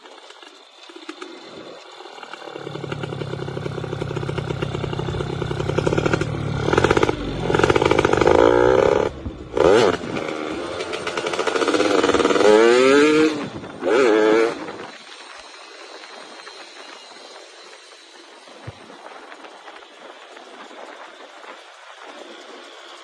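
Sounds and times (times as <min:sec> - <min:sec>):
two-stroke engine revving hard: 0:02.4 - 0:14.8.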